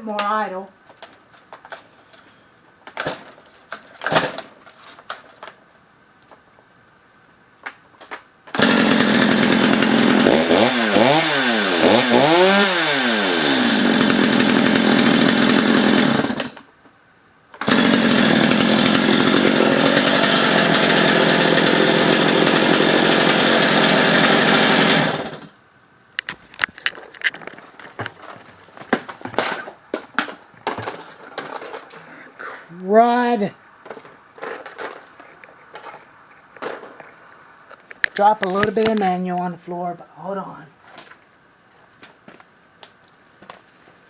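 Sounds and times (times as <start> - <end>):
chainsaw revving and running: 8.5 - 16.6, 17.6 - 25.5
handling knocks and clicks: 26.2 - 32.2, 33.8 - 39.1.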